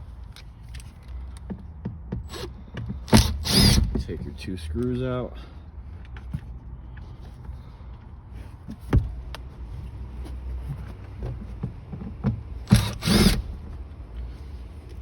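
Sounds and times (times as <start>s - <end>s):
power screwdriver motor whining: 3.1s - 3.9s, 12.7s - 13.6s.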